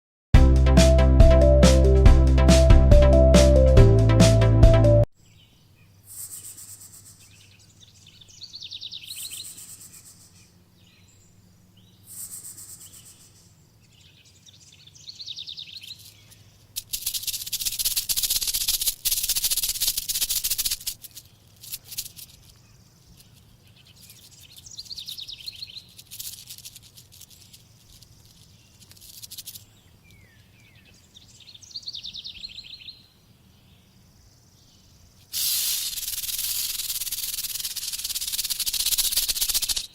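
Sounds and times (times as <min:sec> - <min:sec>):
bird-like chirps: 0:05.2 - 0:33.1
snake hissing: 0:16.8 - 0:22.4, 0:35.3 - 0:39.9.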